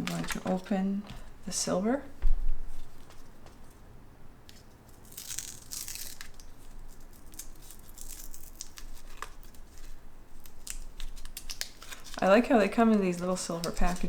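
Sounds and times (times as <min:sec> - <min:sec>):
foil wrapper tearing and rustling: 0:00.0 - 0:00.8, 0:04.9 - 0:14.0
wrapper crinkling and clicking: 0:00.0 - 0:01.3, 0:04.5 - 0:14.0.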